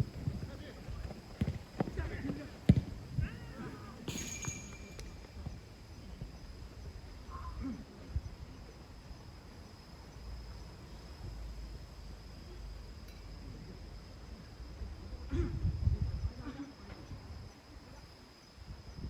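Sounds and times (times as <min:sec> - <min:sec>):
wind buffeting microphone: 0:00.0 - 0:04.1, 0:15.4 - 0:16.4
high-pitched insect trill: 0:03.1 - 0:19.0.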